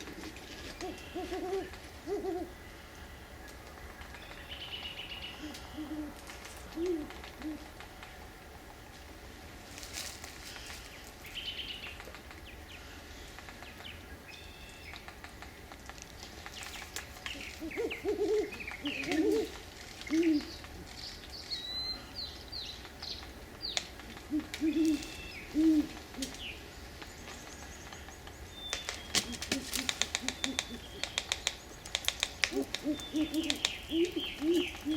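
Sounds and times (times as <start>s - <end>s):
owl hooting: 0.2s - 2.8s, 4.7s - 7.8s, 17.3s - 20.6s, 24.1s - 26.7s, 28.8s - 31.5s, 32.4s - 34.9s
faint small birds chirping: 24.6s - 34.9s.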